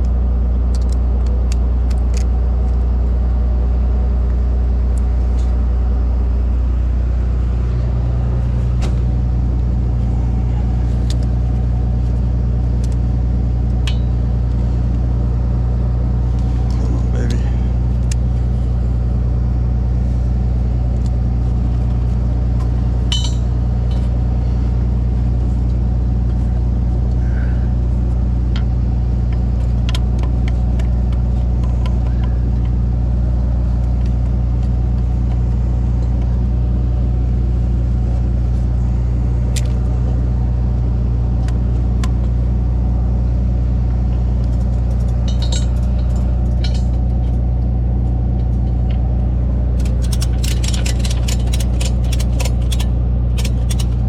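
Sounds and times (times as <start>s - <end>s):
tow truck engine idling: 0.0s - 54.0s
metallic clinks of straps and hooks: 45.0s - 47.4s, 49.8s - 54.0s.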